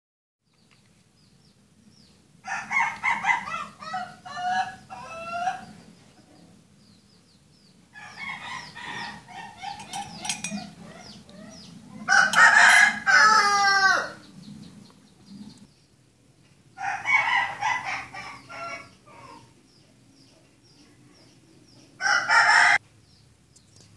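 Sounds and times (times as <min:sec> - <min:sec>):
rooster calling: 0:02.4 - 0:05.9, 0:07.9 - 0:14.3, 0:16.8 - 0:19.5, 0:22.0 - 0:22.8.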